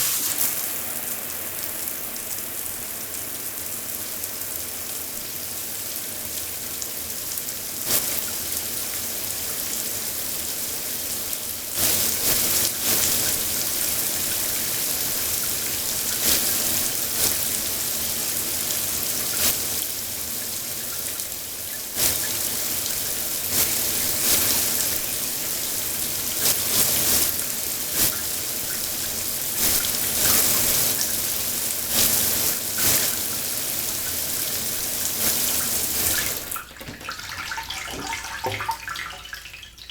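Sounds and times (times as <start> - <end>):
shower water spraying: 0.0 - 1.0, 31.9 - 39.6
water splashes: 35.9 - 39.9.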